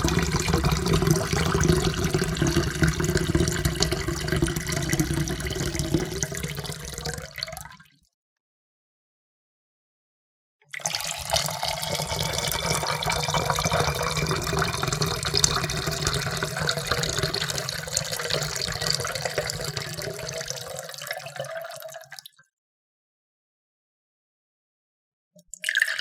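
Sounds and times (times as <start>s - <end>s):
water pouring into a cup: 0.0s - 8.0s, 10.7s - 22.4s, 25.5s - 26.0s.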